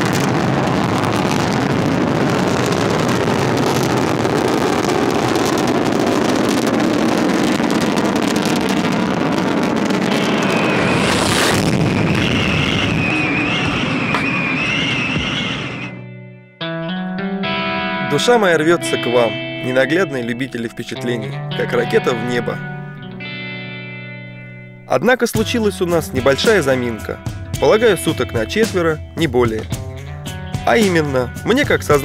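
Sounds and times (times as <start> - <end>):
rocket engines rumbling: 0.0 - 16.0
wavering high whistle: 10.1 - 16.1.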